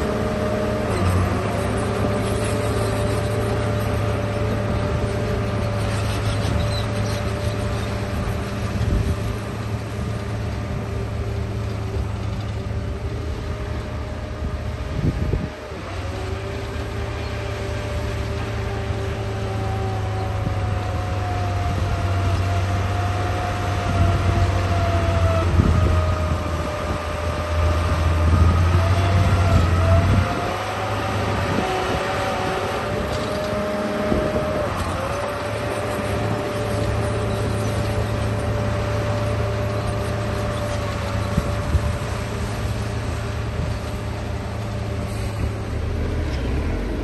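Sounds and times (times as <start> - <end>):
toy bulldozer motor whine: 25.4 - 44.0.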